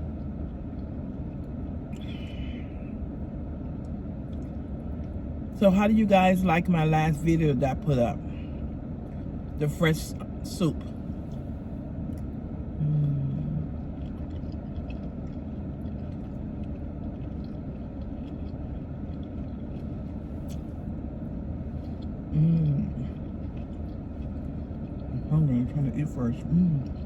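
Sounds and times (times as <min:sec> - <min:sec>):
car engine idling: 0:00.0 - 0:12.8
low hum from a voice: 0:00.0 - 0:27.0
faint eating clicks: 0:13.6 - 0:20.7, 0:22.9 - 0:25.2.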